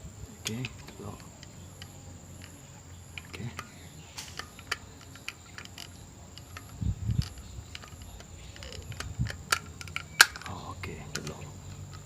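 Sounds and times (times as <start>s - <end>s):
sharp click: 0.4s - 12.0s
plastic clicks and taps: 0.5s - 12.0s
dull low thumps: 6.0s - 9.5s.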